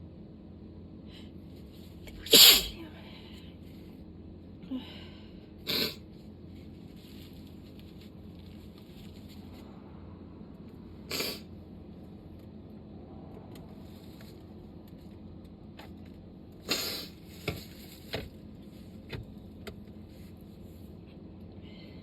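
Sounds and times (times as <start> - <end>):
person sneezing: 2.1 - 2.8, 5.6 - 6.0, 11.1 - 11.5, 16.7 - 17.2.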